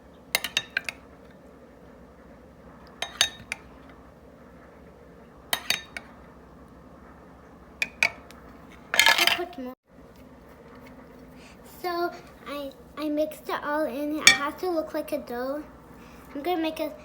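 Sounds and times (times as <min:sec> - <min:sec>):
spoon clinking against bowl: 0:00.4 - 0:01.0, 0:02.9 - 0:03.7, 0:05.5 - 0:06.1, 0:14.2 - 0:14.6.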